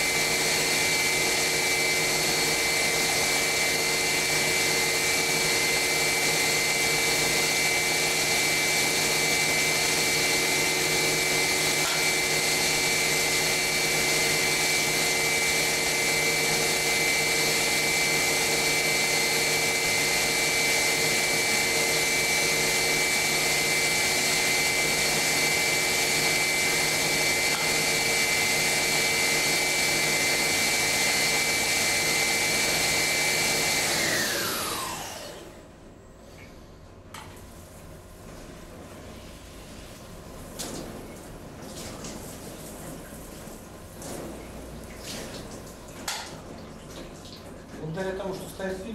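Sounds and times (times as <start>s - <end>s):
grinding machine motor whine: 0.0s - 35.7s.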